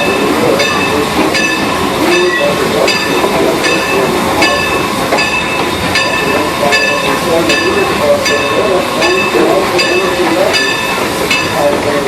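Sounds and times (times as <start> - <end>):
railroad bell ringing: 0.0 - 12.0
train running: 0.0 - 12.0.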